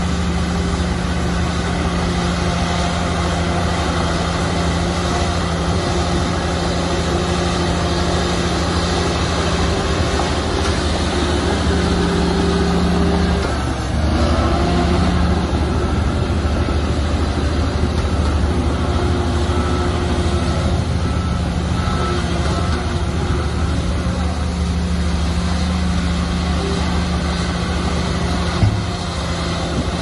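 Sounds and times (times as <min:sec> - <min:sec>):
bulldozer diesel engine running: 0:00.0 - 0:30.0.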